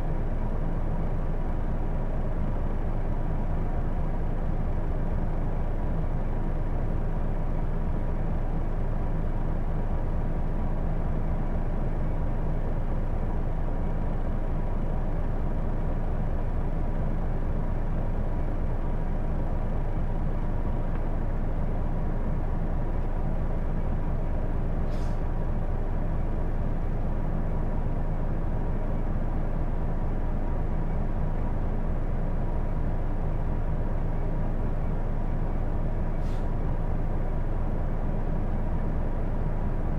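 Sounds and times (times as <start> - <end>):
bus diesel engine and road noise: 0.0 - 39.9.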